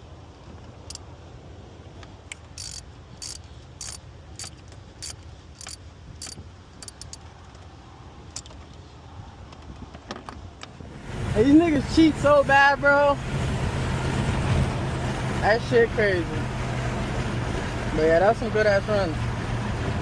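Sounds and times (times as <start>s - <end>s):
low rumble of a car: 0.0s - 20.0s
metal tool rasping on bolt: 2.6s - 7.2s.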